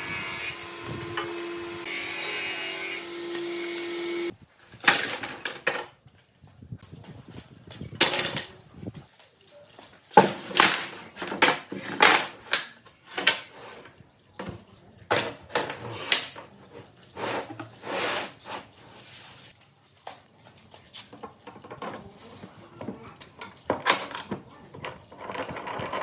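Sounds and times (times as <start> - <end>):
wooden pieces knocking: 7.9 - 8.5
wood scraping strokes: 15.8 - 19.5.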